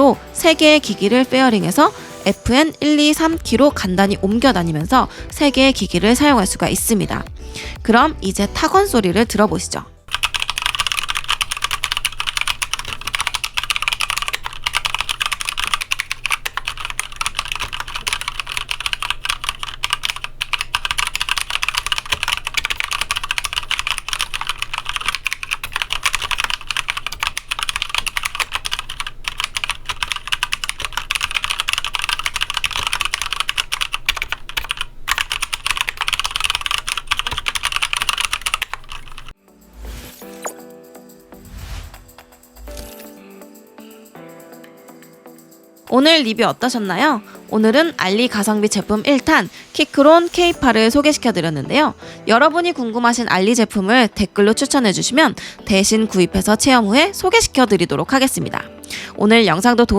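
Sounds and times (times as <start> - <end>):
mechanical keyboard typing: 10.1 - 39.4.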